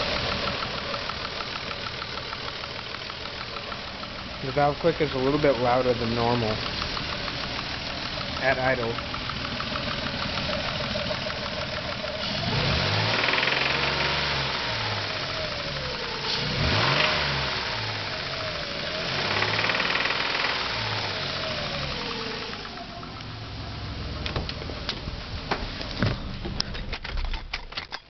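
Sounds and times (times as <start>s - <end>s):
engine knocking: 0.0s - 23.2s
car engine revving: 0.0s - 26.5s.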